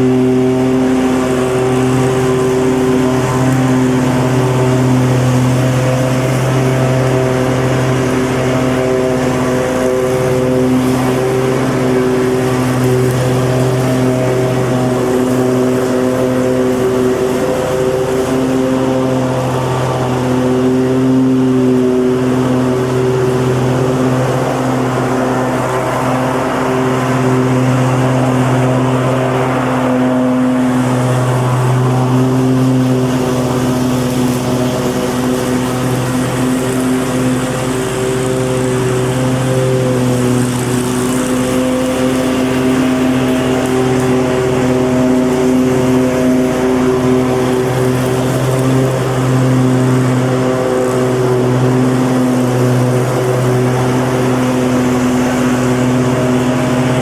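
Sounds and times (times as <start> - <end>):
lawn mower engine running: 0.0 - 57.0.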